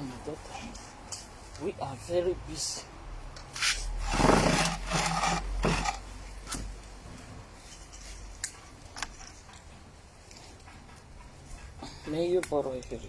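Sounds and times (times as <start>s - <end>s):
leaves rustling and rubbing: 3.6s - 6.0s.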